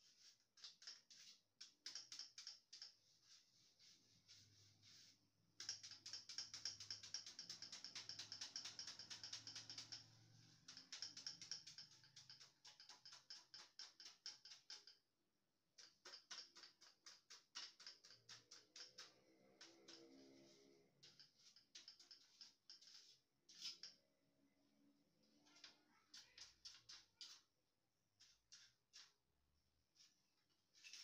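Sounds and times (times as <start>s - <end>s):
rapid evenly spaced clicking: 5.6s - 15.0s.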